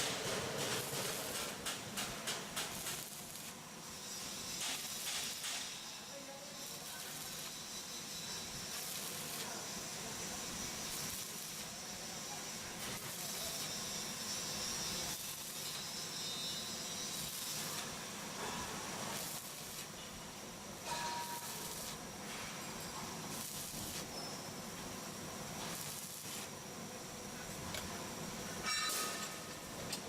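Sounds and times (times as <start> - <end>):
arc welding hiss: 0.0 - 30.0.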